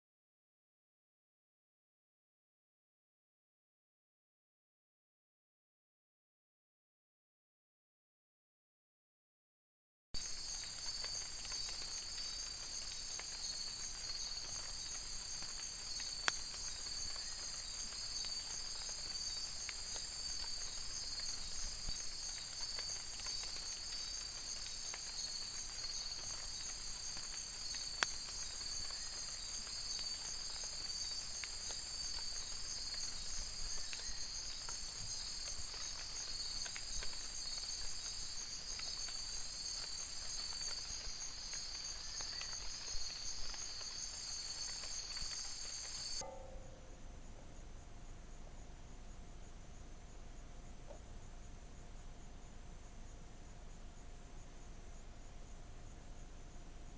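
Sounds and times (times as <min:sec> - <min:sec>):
insects buzzing and trilling: 0:10.2 - 0:46.5.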